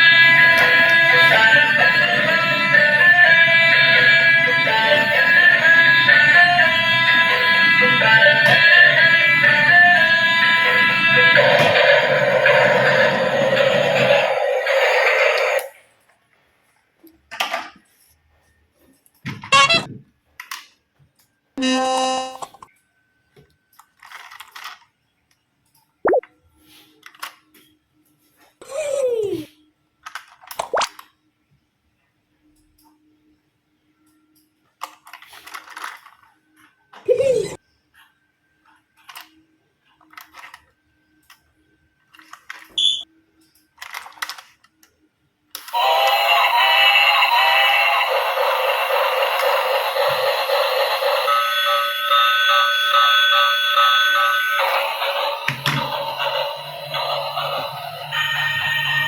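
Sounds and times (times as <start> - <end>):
buzzy toy horn tone: 0.0 - 15.7, 21.6 - 22.5, 45.7 - 59.0
toy hiss: 11.1 - 15.8, 45.7 - 52.1
plastic toy parts rattling: 23.8 - 25.0, 30.0 - 30.6, 34.8 - 36.3, 40.0 - 40.7, 42.1 - 42.8, 43.7 - 44.9
short electronic beep: 42.8 - 43.0
toy clack: 45.6 - 59.0.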